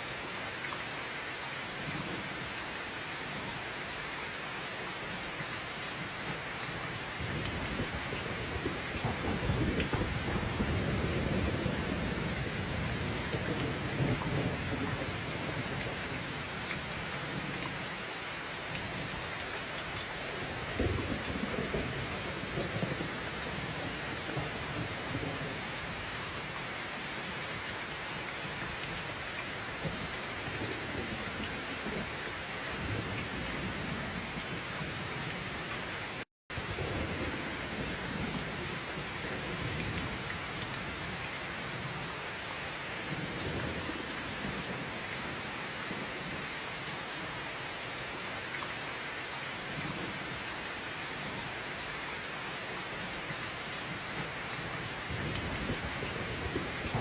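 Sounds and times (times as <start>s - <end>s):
heavy rain falling: 0.0s - 57.0s
rolling thunder: 8.6s - 15.6s, 55.1s - 57.0s.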